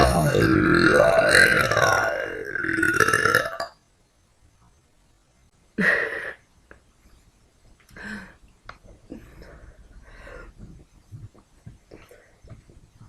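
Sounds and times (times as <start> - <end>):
woman burping: 0.0 - 3.7.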